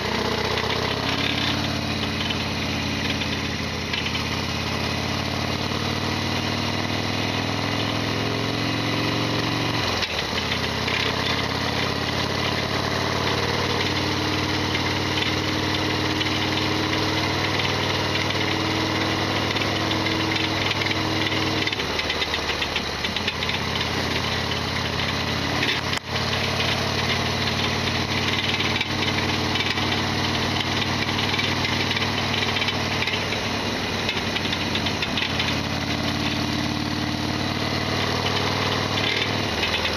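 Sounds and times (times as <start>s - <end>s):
loud mechanical rattling: 0.0s - 4.8s, 9.8s - 13.9s, 14.8s - 39.9s
motorcycle engine running: 0.0s - 39.9s.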